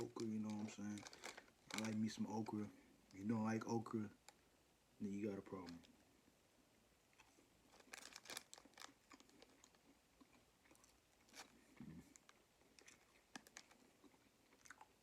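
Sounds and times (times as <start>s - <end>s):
crunchy food chewing: 0.0s - 2.2s, 7.1s - 15.0s.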